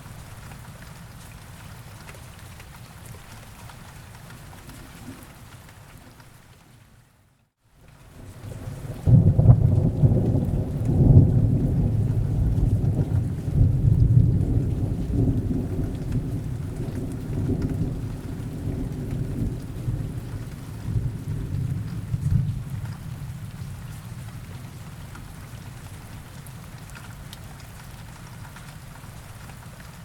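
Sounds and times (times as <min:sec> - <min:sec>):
steady rain: 0:00.0 - 0:30.0
rolling thunder: 0:08.2 - 0:24.5.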